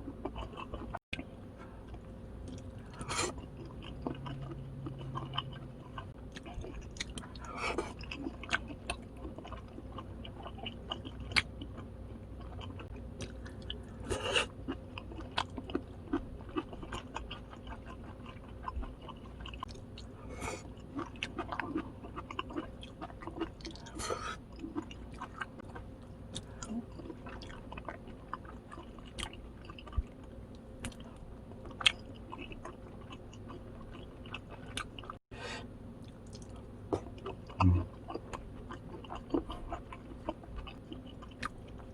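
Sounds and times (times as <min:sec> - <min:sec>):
person chewing food: 0:00.0 - 0:35.2, 0:36.0 - 0:41.9.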